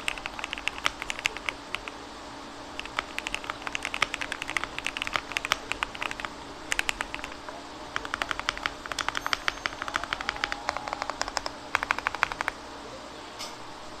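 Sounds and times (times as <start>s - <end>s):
typing on mechanical keyboard: 0.0s - 1.9s, 2.8s - 7.4s, 8.0s - 12.6s.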